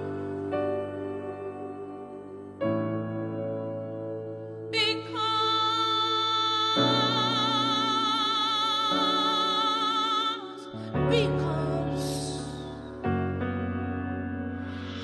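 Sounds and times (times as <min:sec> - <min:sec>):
person singing with vibrato: 0:00.0 - 0:03.1, 0:04.7 - 0:13.2
slow ballad: 0:00.0 - 0:15.0.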